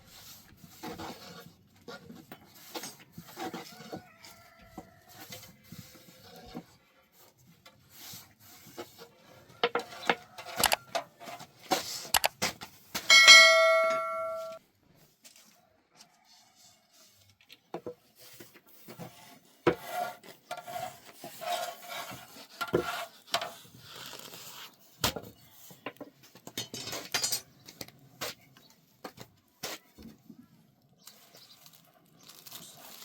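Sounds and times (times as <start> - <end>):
loud metallic ring: 13.1 - 14.6
knocks and clatter of handling: 25.1 - 28.0.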